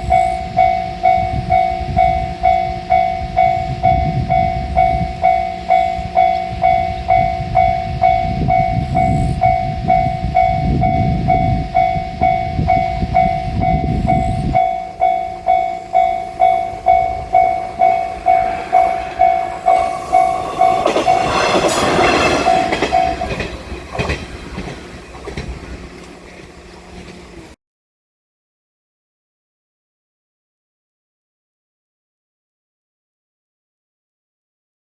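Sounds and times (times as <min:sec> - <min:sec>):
level crossing bell clanging: 0:00.0 - 0:25.5
train rumbling: 0:00.0 - 0:27.6.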